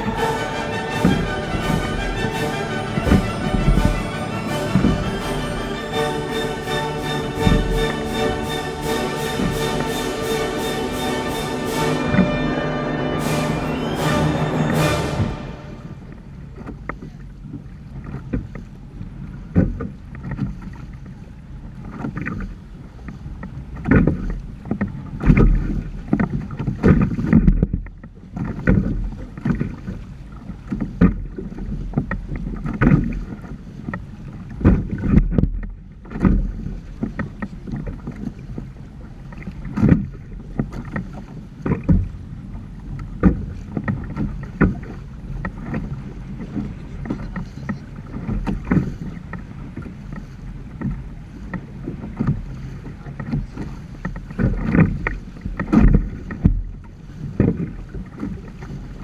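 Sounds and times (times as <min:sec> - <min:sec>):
rushing water: 0:00.0 - 0:16.1.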